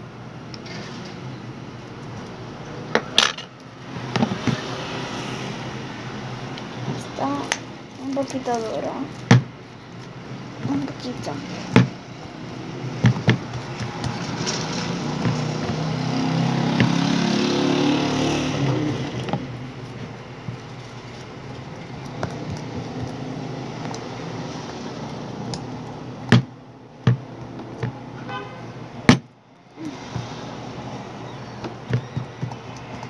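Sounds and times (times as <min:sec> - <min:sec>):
vehicle passing by: 0:03.8 - 0:07.4, 0:11.2 - 0:19.9, 0:21.7 - 0:26.2, 0:29.6 - 0:31.6.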